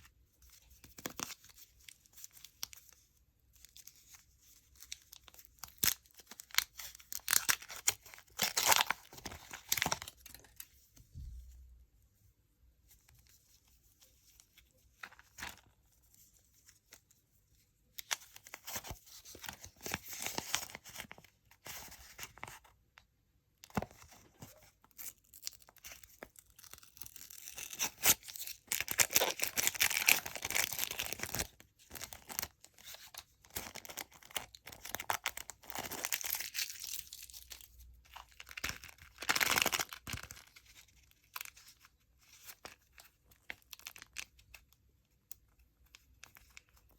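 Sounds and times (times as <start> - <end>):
candy wrappers crinkling and tearing: 4.7 - 10.6, 25.0 - 44.7.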